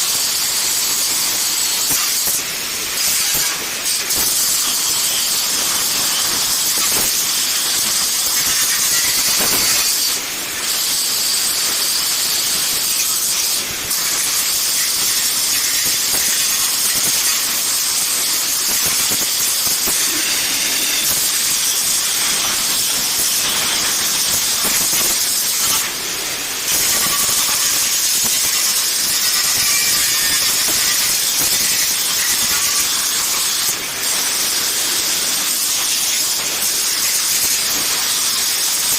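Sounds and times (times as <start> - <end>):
angle grinder on metal: 0.0 - 38.9.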